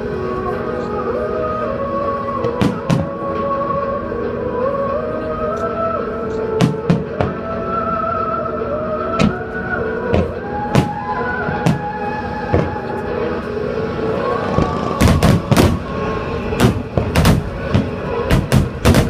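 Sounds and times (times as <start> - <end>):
background music: 0.0 - 19.0
fireworks bangs: 10.2 - 12.9, 14.5 - 19.0.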